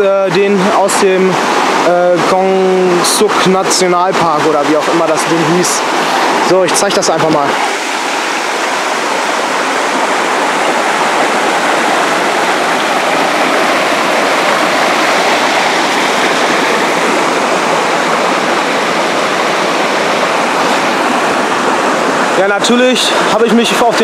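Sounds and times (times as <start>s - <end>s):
waterfall rushing: 0.0s - 24.0s.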